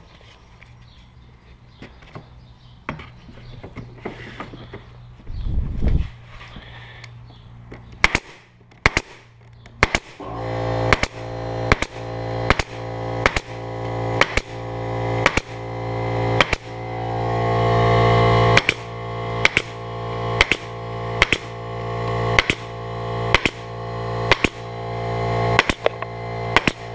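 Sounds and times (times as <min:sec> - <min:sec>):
pneumatic staple gun firing: 0:08.0 - 0:26.9
air compressor hum: 0:09.9 - 0:26.9.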